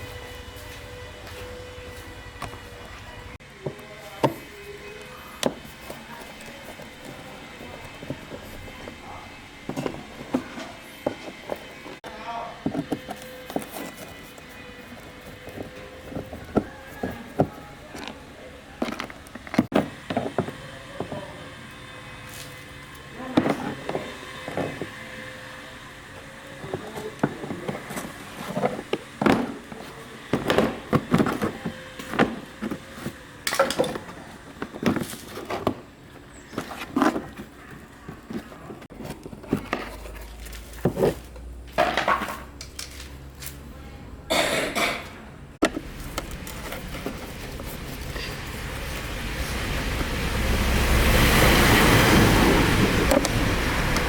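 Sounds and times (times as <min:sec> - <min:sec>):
hand tools clicking and knocking: 0:26.6 - 0:43.1.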